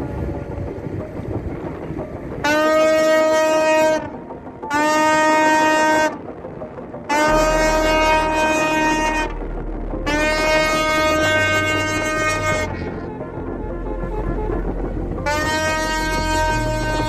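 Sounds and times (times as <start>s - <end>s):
low rumble: 0.0s - 17.0s
noisy background: 0.0s - 17.0s
tugboat horn blasts: 2.4s - 6.2s, 7.1s - 9.4s, 10.0s - 17.0s.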